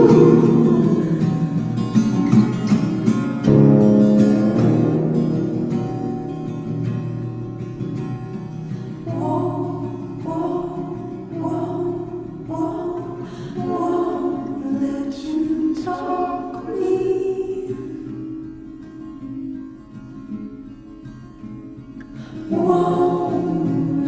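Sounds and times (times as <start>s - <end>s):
song with singing voice: 0.0s - 2.6s, 9.1s - 18.0s, 22.4s - 24.0s.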